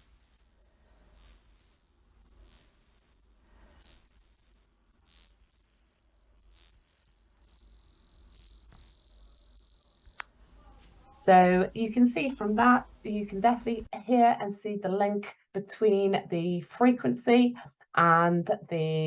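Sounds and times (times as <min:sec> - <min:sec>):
falling sine tone: 0:00.0 - 0:10.2.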